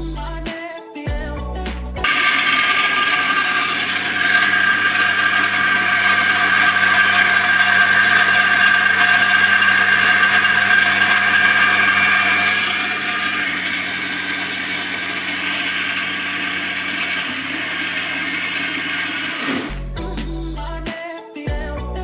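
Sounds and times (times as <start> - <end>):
mixer grinder motor whining: 2.0 - 19.8.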